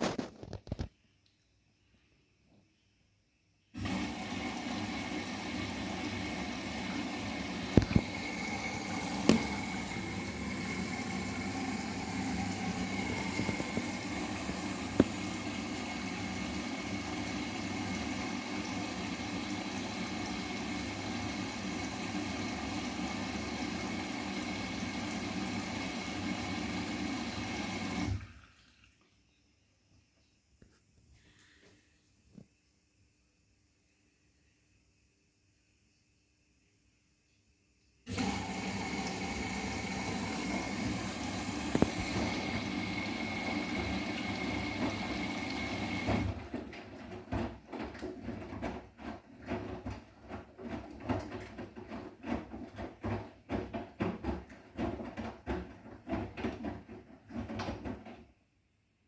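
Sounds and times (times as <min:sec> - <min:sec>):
water rushing in washing machine: 0:03.8 - 0:29.0, 0:38.1 - 0:58.4.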